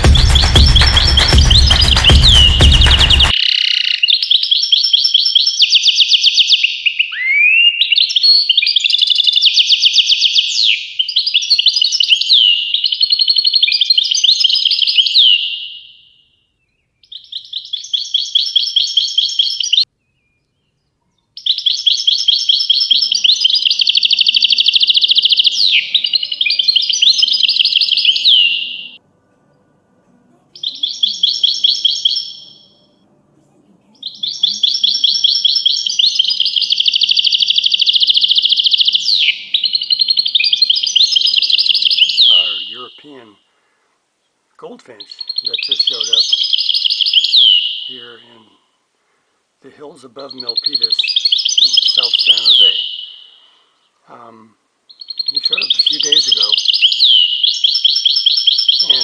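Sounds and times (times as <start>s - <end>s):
finch singing: 0.0s - 3.4s, 21.4s - 29.0s, 30.5s - 33.0s, 34.0s - 43.3s, 44.9s - 48.5s, 50.1s - 53.5s, 54.2s - 59.0s.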